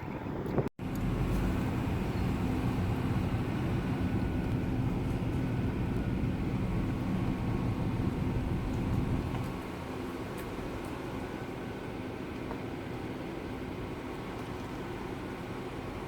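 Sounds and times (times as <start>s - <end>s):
car engine and road drone: 0.0s - 16.0s.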